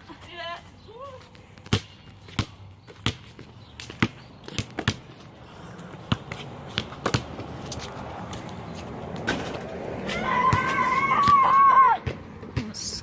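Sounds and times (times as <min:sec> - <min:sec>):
basketball bouncing on hard surface: 0:01.6 - 0:05.3, 0:05.9 - 0:08.4.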